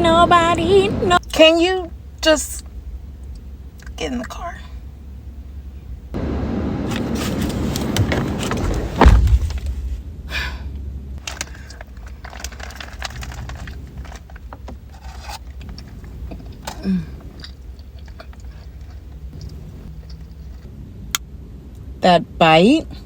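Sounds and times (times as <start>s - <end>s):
low steady hum: 0.0s - 23.0s
person chewing crunchy food: 15.0s - 20.7s.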